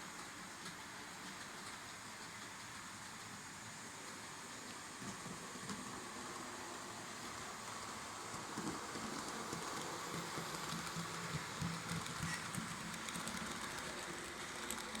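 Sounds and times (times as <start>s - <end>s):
rolling hiss of model train: 0.0s - 15.0s.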